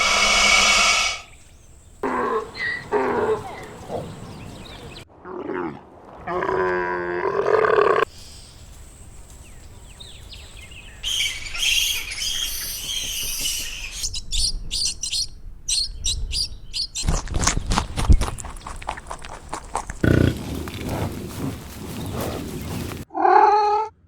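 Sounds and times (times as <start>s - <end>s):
twittering bird-like chirps: 1.2s - 5.0s, 10.1s - 17.2s
drawn-out animal call: 2.0s - 5.0s, 18.5s - 23.4s.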